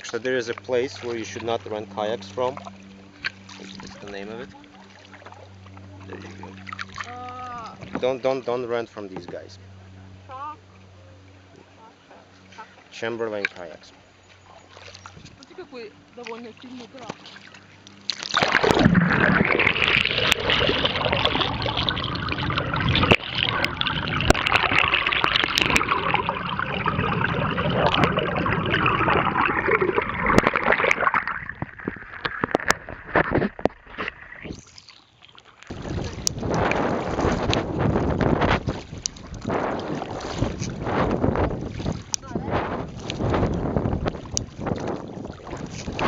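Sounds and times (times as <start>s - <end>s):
small splashes and knocks: 0.0s - 9.5s, 12.3s - 22.0s, 30.3s - 46.0s
river water rushing and gurgling: 0.0s - 10.3s.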